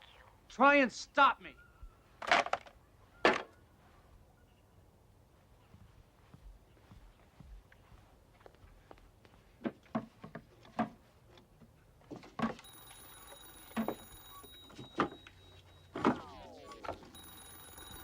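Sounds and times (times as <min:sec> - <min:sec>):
steady high-pitched tone: 0:12.6 - 0:18.0
falling sliding sound: 0:14.7 - 0:18.0.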